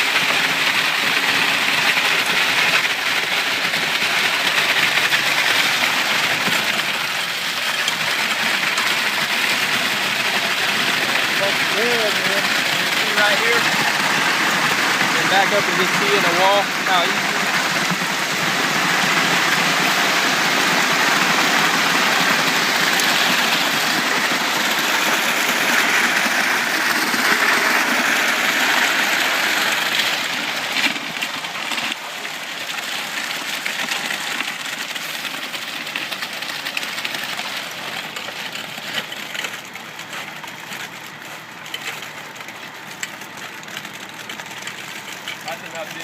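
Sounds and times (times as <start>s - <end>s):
wet concrete sliding down chute: 0.0s - 46.0s
small clicks of stones: 32.8s - 46.0s.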